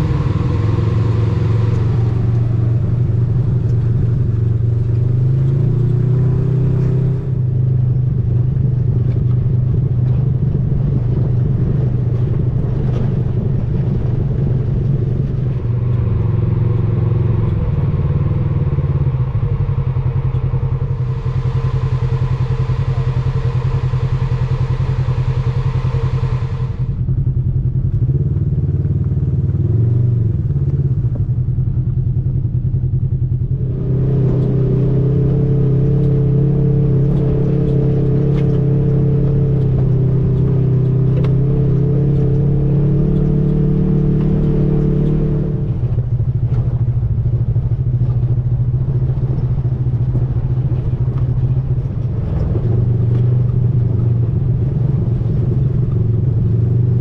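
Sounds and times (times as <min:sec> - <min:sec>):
off-road vehicle engine running: 0:00.0 - 0:57.0
hiss: 0:20.7 - 0:27.0.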